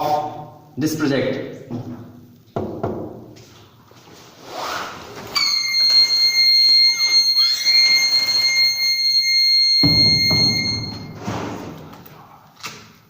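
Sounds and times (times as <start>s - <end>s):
high-pitched buzzer alarm: 5.4s - 11.2s.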